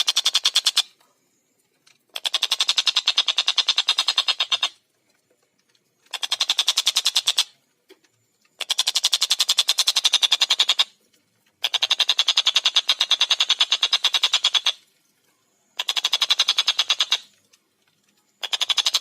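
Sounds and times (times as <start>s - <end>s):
kingfisher rattling call: 0.0s - 1.0s, 2.1s - 4.8s, 6.1s - 7.6s, 8.6s - 11.0s, 11.6s - 14.8s, 15.8s - 17.3s, 18.4s - 19.0s.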